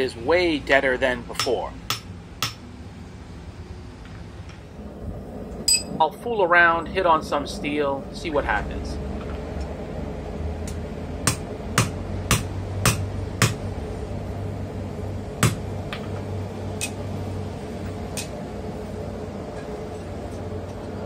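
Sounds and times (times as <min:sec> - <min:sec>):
hammer striking steel on anvil: 0:01.4 - 0:02.6, 0:05.7 - 0:06.0.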